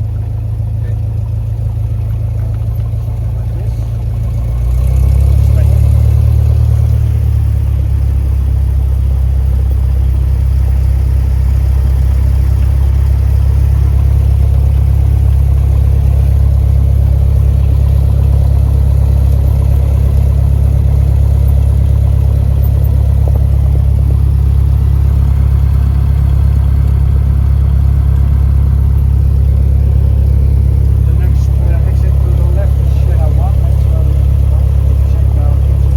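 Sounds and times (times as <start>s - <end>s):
light aircraft engine drone: 0.0s - 35.9s.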